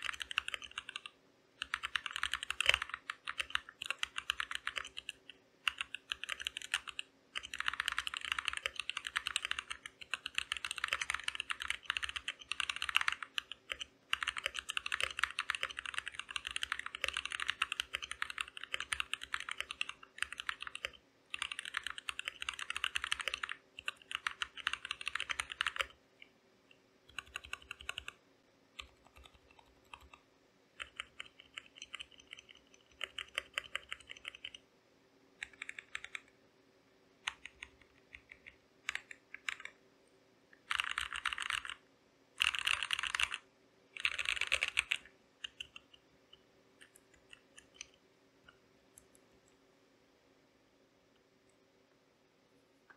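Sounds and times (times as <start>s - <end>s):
mechanical keyboard typing: 0.0s - 26.0s, 27.1s - 28.2s, 28.8s - 30.2s, 30.8s - 34.6s, 35.4s - 36.3s, 37.3s - 39.8s, 40.5s - 41.8s, 42.4s - 43.4s, 44.0s - 46.0s, 46.8s - 48.0s.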